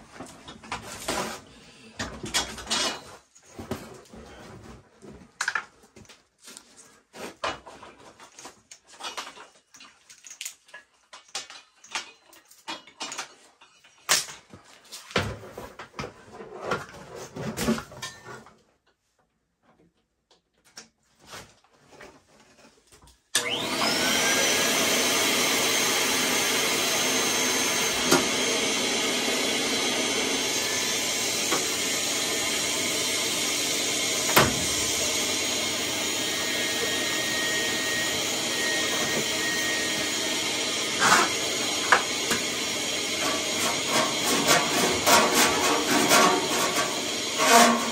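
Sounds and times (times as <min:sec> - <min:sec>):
vacuum cleaner running: 0:23.4 - 0:47.9.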